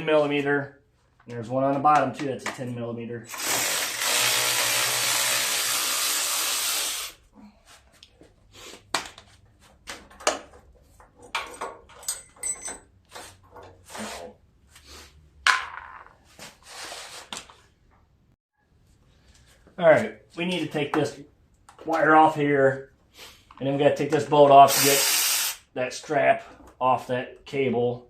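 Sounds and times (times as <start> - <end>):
power tool running: 3.3 - 7.2
metal parts clinking and knocking: 10.0 - 12.9.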